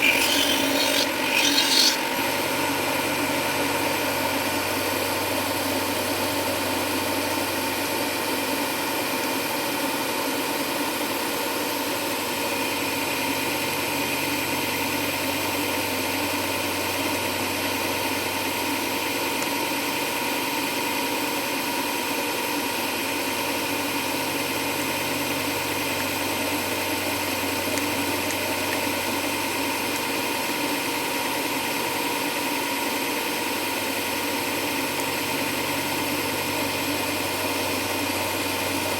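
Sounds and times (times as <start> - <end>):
electric grinder whining: 0.0 - 2.7.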